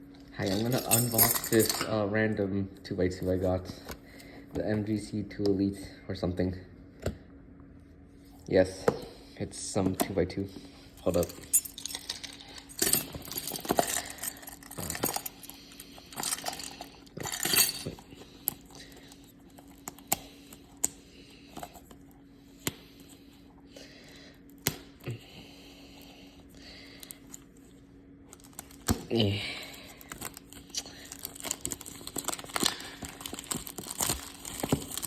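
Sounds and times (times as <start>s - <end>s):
plastic packaging rustling: 29.8s - 35.0s.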